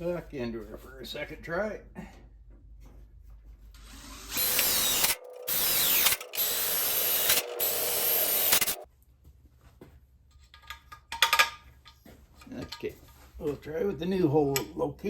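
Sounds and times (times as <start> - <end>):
power drill drilling sheet metal: 3.8 - 8.9.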